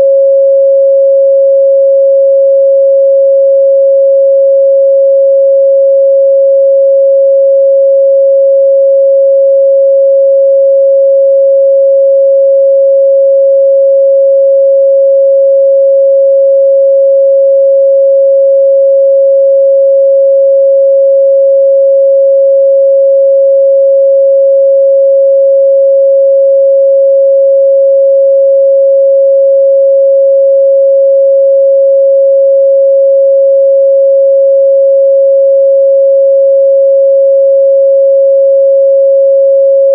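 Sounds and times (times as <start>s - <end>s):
sine wave test tone: 0.0s - 39.9s.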